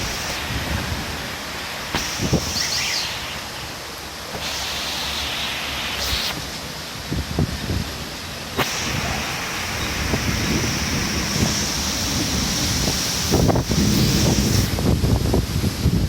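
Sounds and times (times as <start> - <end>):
heavy rain: 0.0 - 16.0
wind buffeting microphone: 1.9 - 2.6, 7.0 - 16.0.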